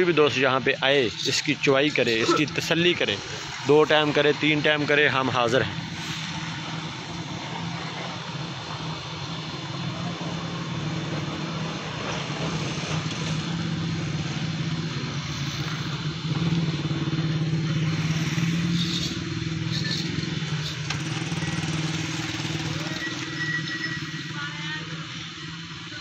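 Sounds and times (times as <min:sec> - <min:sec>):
engine running steadily: 0:00.0 - 0:26.0.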